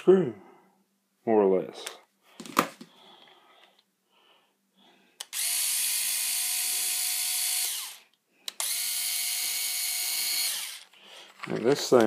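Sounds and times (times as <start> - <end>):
electric screwdriver whining: 5.2 - 11.0.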